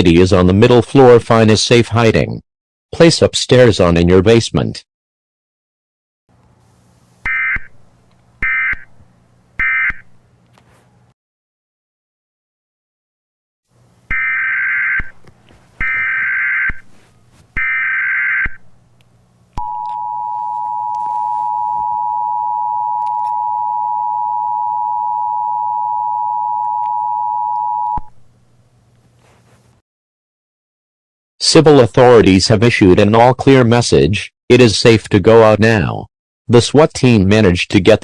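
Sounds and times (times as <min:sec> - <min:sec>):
screechy data bursts: 0:15.8 - 0:16.8
faint low hum: 0:18.6 - 0:29.8.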